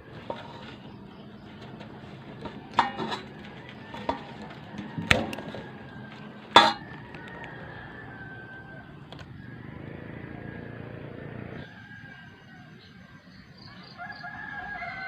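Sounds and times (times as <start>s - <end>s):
hard objects knocking and clinking: 0.0s - 7.4s.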